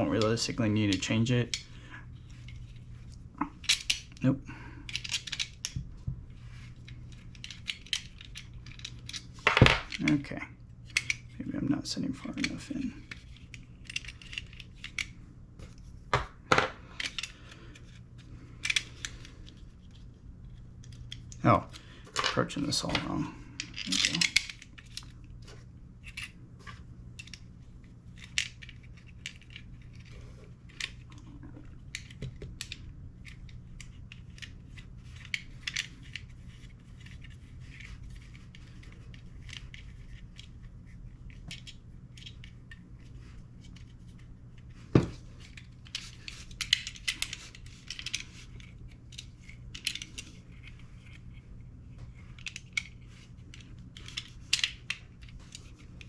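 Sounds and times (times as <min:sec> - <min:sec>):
steady low hum: 0:00.0 - 0:56.0
small metal parts clicking: 0:03.6 - 0:04.2, 0:04.8 - 0:05.8, 0:06.7 - 0:10.2, 0:10.8 - 0:11.3, 0:12.3 - 0:15.1, 0:16.9 - 0:18.0, 0:18.6 - 0:19.3, 0:22.2 - 0:25.1, 0:31.8 - 0:40.6, 0:45.4 - 0:51.2, 0:52.2 - 0:55.8.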